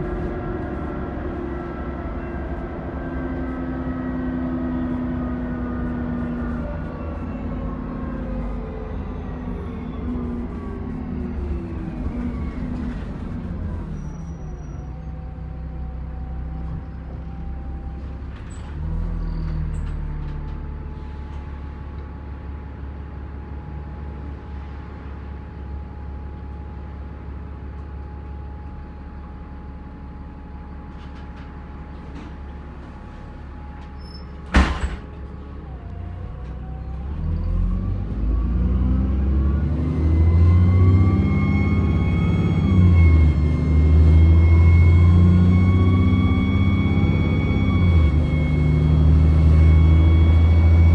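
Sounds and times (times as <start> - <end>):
engine revving with turbo whine: 0.0 - 14.9, 37.0 - 50.9
bus diesel engine idling: 0.0 - 37.7, 41.9 - 50.9.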